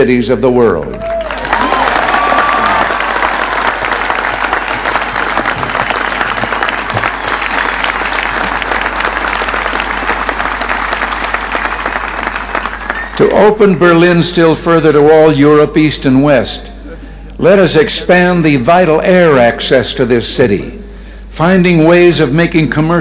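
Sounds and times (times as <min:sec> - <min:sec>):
crowd applauding: 0:00.9 - 0:13.6.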